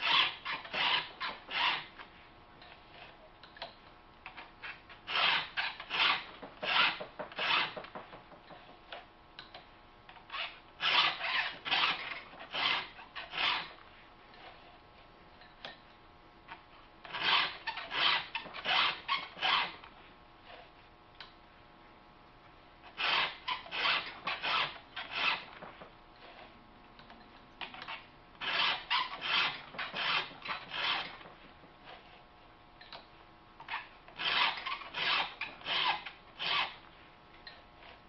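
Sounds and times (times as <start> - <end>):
hand file strokes on chain: 5.1 - 8.0, 17.1 - 19.8, 28.4 - 31.2, 34.2 - 36.8.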